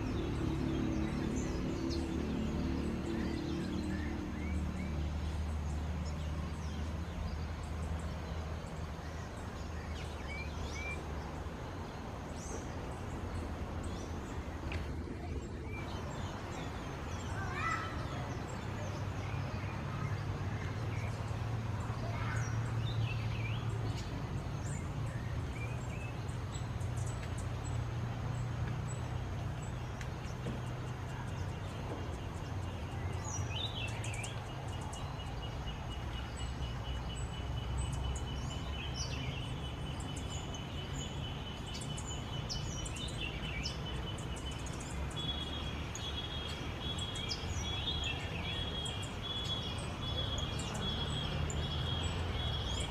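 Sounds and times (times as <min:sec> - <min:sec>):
small birds chirping: 0:00.0 - 0:52.9.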